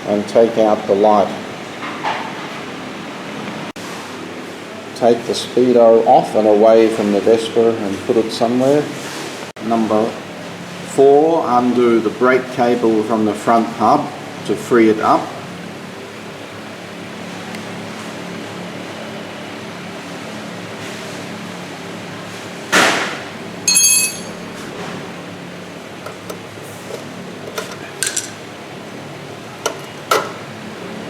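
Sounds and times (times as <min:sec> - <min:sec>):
metal tools clinking: 0:23.7 - 0:24.4, 0:27.5 - 0:28.4.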